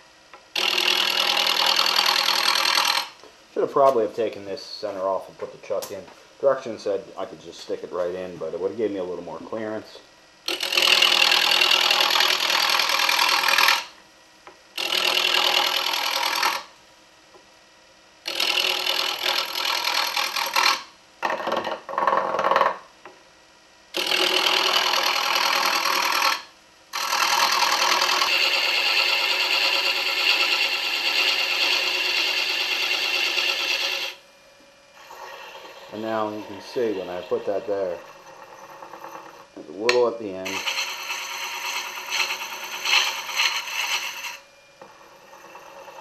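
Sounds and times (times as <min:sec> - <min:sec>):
lathe tool cutting wood: 0:00.6 - 0:03.1, 0:10.5 - 0:13.9, 0:14.8 - 0:16.6, 0:18.3 - 0:21.5, 0:24.0 - 0:34.2, 0:35.0 - 0:46.0.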